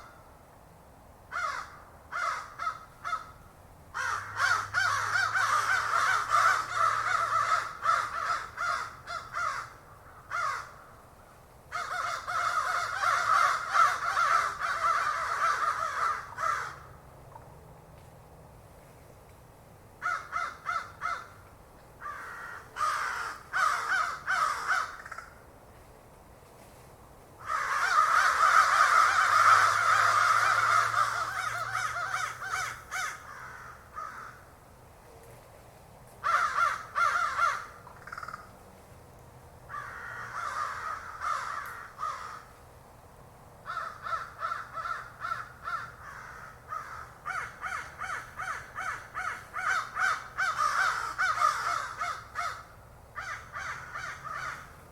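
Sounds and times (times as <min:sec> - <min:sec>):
crows cawing: 0:01.3 - 0:11.0, 0:11.7 - 0:17.0, 0:20.0 - 0:21.4, 0:22.0 - 0:25.4, 0:27.4 - 0:34.6, 0:36.2 - 0:38.5, 0:39.7 - 0:42.6, 0:43.6 - 0:54.8.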